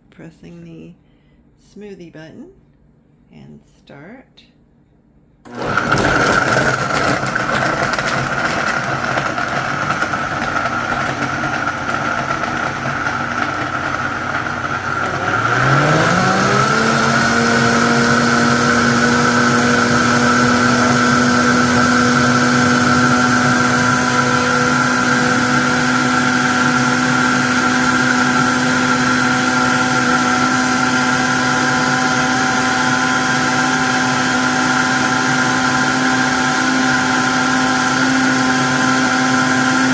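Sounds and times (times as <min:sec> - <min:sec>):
blender motor whining: 0:05.5 - 0:39.9.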